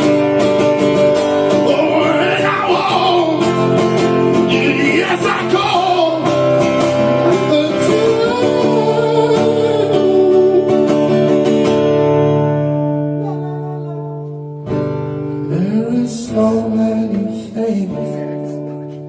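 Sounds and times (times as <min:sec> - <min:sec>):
strummed acoustic guitar: 0:00.0 - 0:19.0
wordless singing voice: 0:01.4 - 0:10.8, 0:15.4 - 0:19.0.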